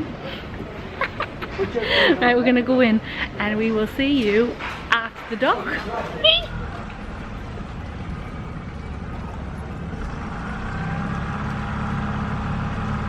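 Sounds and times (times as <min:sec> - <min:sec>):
motorboat engine running: 0:06.5 - 0:13.0.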